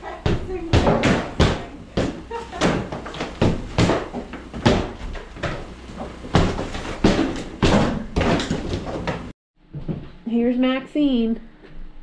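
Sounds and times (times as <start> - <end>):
sledgehammer blows on walls: 0.2 - 9.3.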